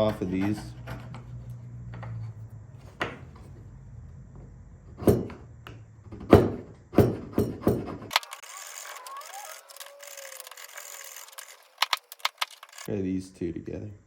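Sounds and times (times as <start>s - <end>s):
hand tool knocking and scraping wood: 0.0s - 1.4s, 6.1s - 8.4s.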